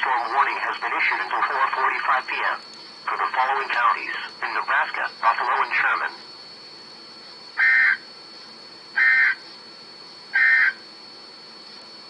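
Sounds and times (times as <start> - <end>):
warbling digital data bursts: 0.0 - 6.2.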